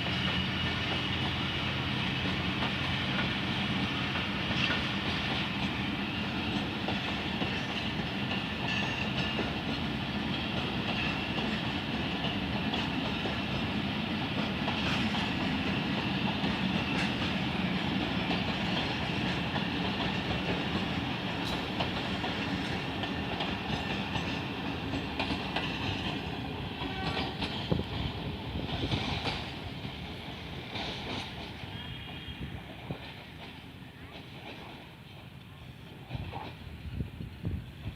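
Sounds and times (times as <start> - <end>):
diesel train running on track: 0.0 - 37.9.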